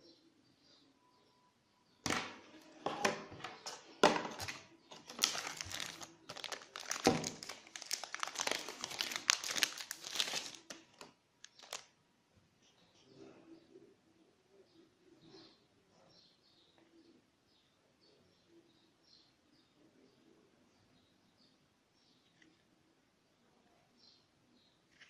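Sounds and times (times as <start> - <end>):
plastic packaging crinkling: 3.6 - 11.9.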